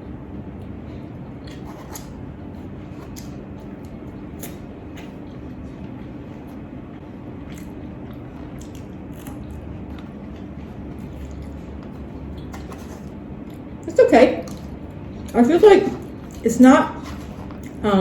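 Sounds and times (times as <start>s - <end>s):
steady low hum: 0.0s - 18.0s
person chewing: 1.4s - 5.4s, 7.4s - 13.7s, 14.5s - 15.4s, 16.0s - 16.4s, 17.0s - 17.8s.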